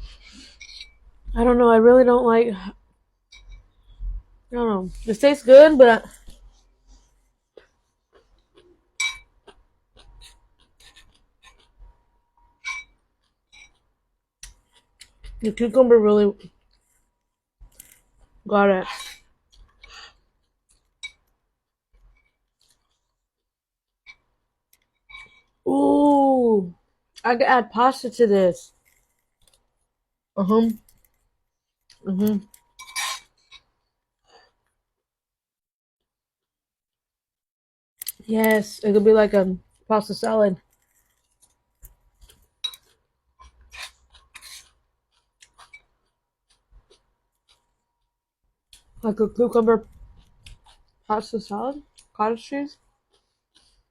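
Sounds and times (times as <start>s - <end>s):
chewing noises: 6.1s - 11.9s, 40.6s - 47.8s, 49.8s - 51.1s, 51.8s - 53.9s.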